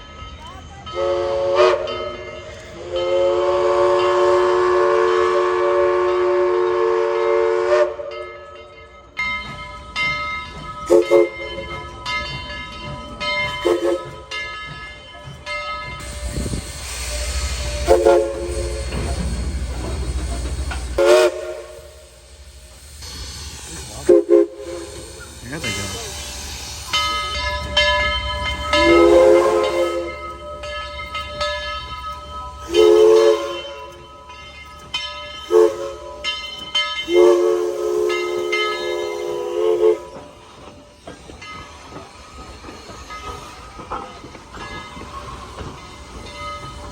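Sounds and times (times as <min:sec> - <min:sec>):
steam whistle toots: 0:01.0 - 0:02.2, 0:02.8 - 0:08.2, 0:10.9 - 0:11.5, 0:13.6 - 0:14.2, 0:16.1 - 0:19.3, 0:21.0 - 0:22.4, 0:23.0 - 0:25.4, 0:28.7 - 0:30.4, 0:32.6 - 0:34.0, 0:35.4 - 0:36.3, 0:37.0 - 0:40.4.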